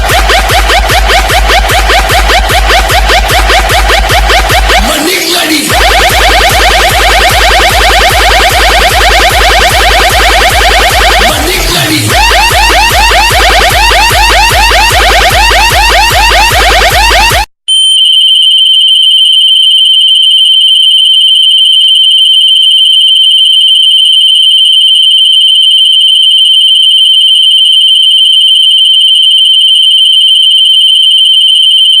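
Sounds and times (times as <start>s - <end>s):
high-pitched electronic tone: 0.0s - 18.5s.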